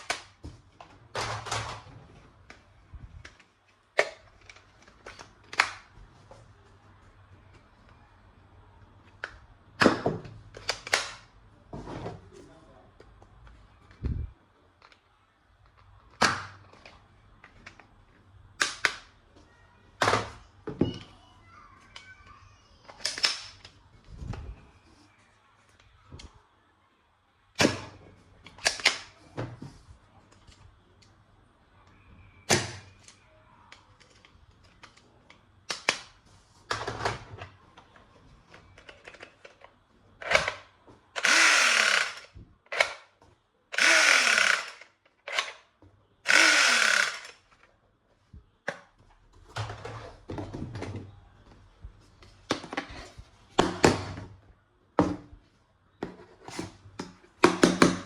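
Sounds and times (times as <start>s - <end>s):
toy gun buzzing bursts: 41.2s - 42.9s, 43.8s - 45.4s, 46.3s - 47.4s
toy gun clicks and snaps: 41.2s - 43.0s, 43.7s - 45.6s, 46.3s - 47.4s.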